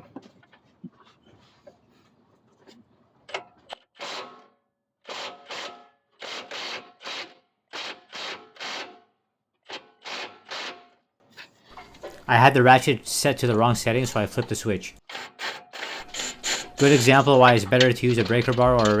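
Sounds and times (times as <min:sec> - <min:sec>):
hand ratchet clicking: 0:15.8 - 0:19.0.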